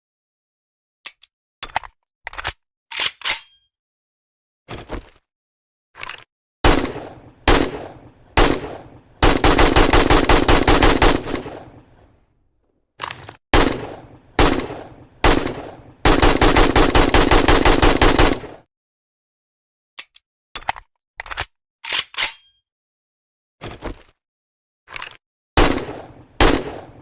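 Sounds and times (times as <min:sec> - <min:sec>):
rifle gunshots: 0:06.6 - 0:12.0, 0:13.6 - 0:18.6, 0:25.6 - 0:27.0.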